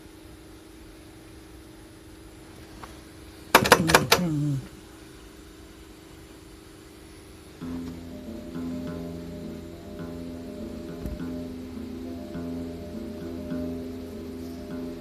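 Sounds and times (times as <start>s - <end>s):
steady hum: 0.0s - 15.0s
tape deck mechanical clicks: 3.5s - 4.4s
low tone sliding down: 7.6s - 15.0s
music from tape: 7.6s - 15.0s.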